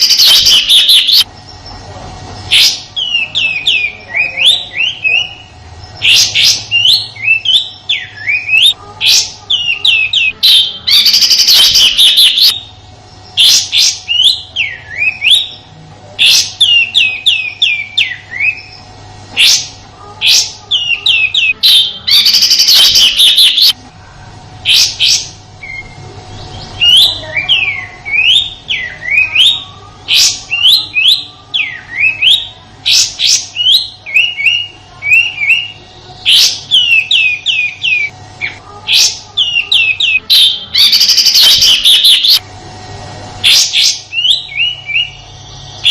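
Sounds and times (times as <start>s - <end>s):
songbird whistling song: 0.0s - 1.9s, 2.5s - 23.8s, 24.7s - 42.4s, 43.4s - 45.9s
faint steady hum: 0.0s - 45.9s.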